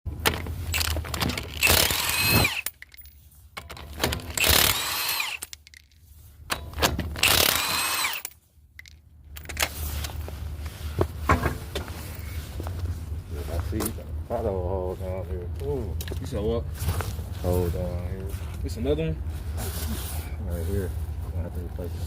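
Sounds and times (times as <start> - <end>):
impact wrench whirring: 0.7 - 2.8, 3.9 - 5.6, 7.0 - 8.3.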